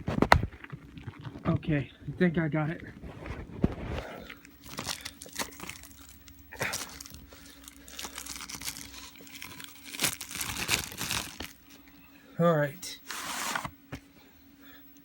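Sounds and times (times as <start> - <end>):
plastic shrink wrap crinkling: 3.0 - 11.9.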